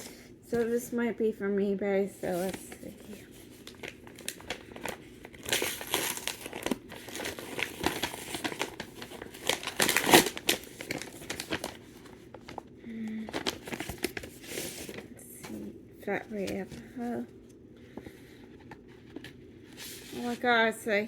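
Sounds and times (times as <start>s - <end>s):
packaging crinkling and ripping: 2.4s - 15.2s.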